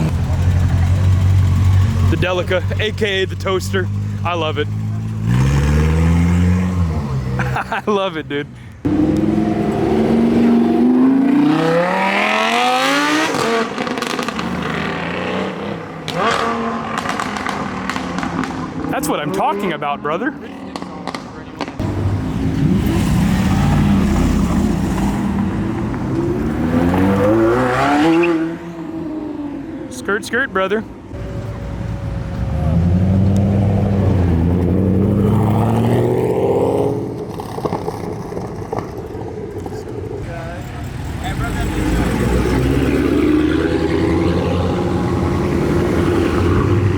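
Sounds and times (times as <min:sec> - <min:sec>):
car engine accelerating hard: 0:00.0 - 0:07.6, 0:08.8 - 0:19.7, 0:20.7 - 0:29.4, 0:31.2 - 0:46.9.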